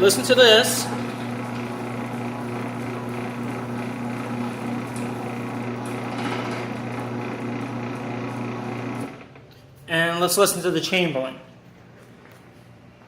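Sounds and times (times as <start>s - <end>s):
garage door opener motor hum: 0.0s - 9.5s.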